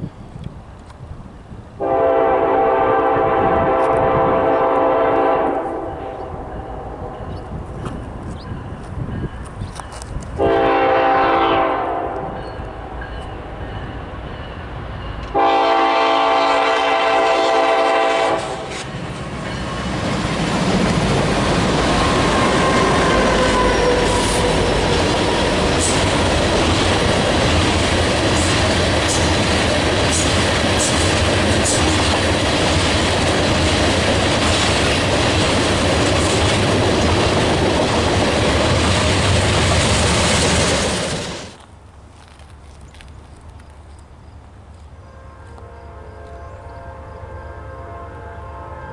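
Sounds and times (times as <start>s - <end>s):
train wheels rumbling on rails: 0.0s - 47.2s
locomotive air horn: 1.8s - 6.3s, 10.4s - 12.4s, 15.3s - 18.8s, 22.0s - 24.9s, 45.1s - 48.9s.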